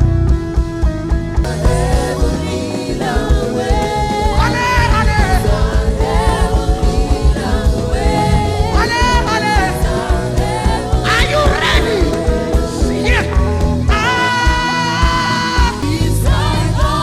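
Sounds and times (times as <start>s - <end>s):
gospel band with pulsing beat: 0.0s - 17.0s.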